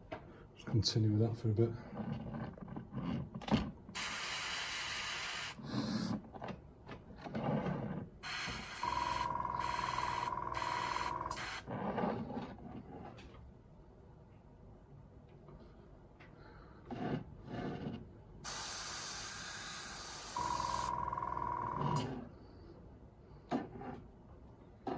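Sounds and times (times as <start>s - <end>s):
spray paint hissing: 4.0s - 5.6s, 8.2s - 11.6s, 18.5s - 20.9s.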